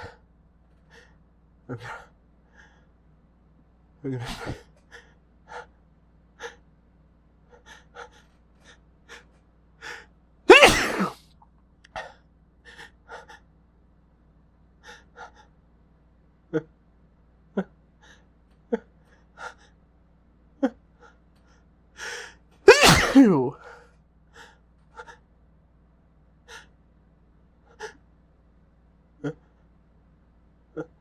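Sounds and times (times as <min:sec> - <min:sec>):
person sneezing: 0:04.1 - 0:04.6, 0:10.5 - 0:11.2, 0:22.7 - 0:23.8
short sharp sounds: 0:22.7 - 0:23.5.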